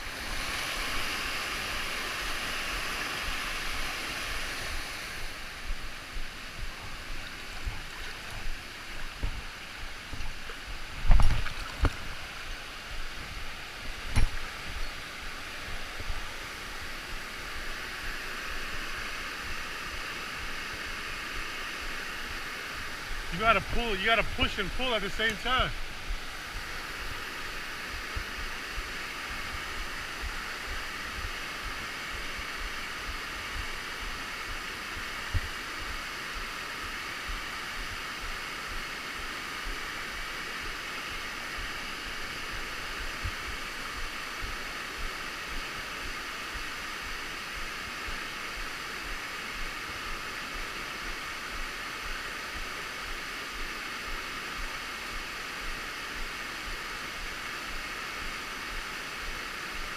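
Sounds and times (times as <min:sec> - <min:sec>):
waterfall rushing: 0:00.0 - 0:59.9.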